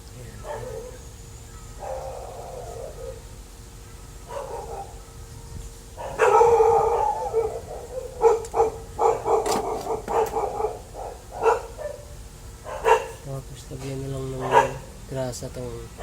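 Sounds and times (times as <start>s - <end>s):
dog barking: 0.4s - 1.0s, 1.8s - 3.3s, 4.2s - 5.1s, 6.0s - 13.2s, 14.4s - 14.9s
dog howling: 1.6s - 3.3s, 3.9s - 5.4s, 6.0s - 13.2s.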